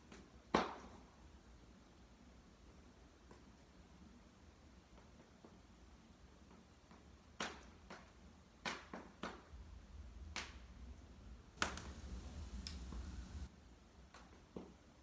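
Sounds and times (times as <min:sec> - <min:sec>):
low fire rumble: 0:11.3 - 0:13.5
fire hissing: 0:11.6 - 0:13.5
wood fire crackling and popping: 0:11.6 - 0:13.5.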